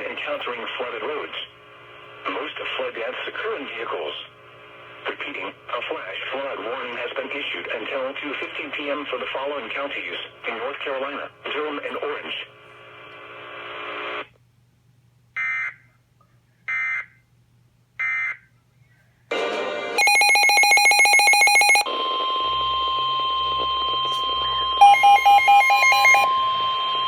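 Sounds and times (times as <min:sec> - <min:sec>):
beeping: 0:20.0 - 0:27.0
long steady alarm tone: 0:20.0 - 0:27.0
rapid pulsing beeps: 0:20.0 - 0:27.0
short data bursts: 0:20.0 - 0:27.0.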